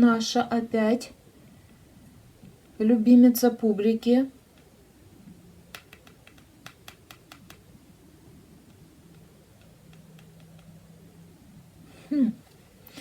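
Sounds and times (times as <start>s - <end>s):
faint low hum: 0.0s - 13.0s
cards tapping on a table: 5.7s - 7.6s.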